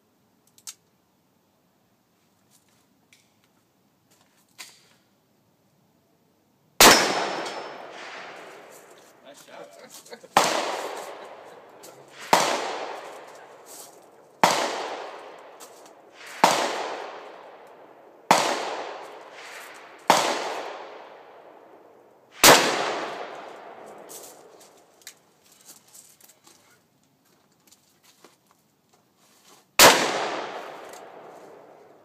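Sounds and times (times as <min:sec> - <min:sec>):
handgun shots echoing: 0:06.8 - 0:08.9, 0:10.4 - 0:13.6, 0:14.4 - 0:21.2, 0:22.4 - 0:24.5, 0:29.8 - 0:31.7.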